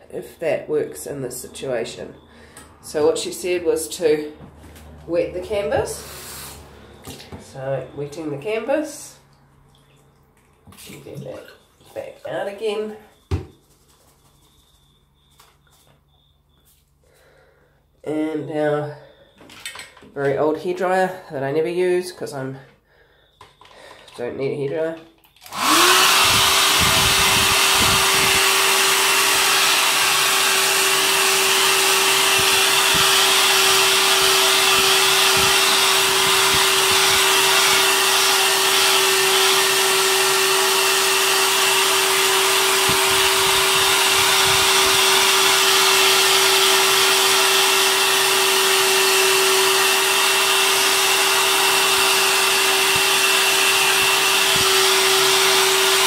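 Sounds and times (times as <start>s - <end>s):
hair dryer running: 25.4s - 56.0s.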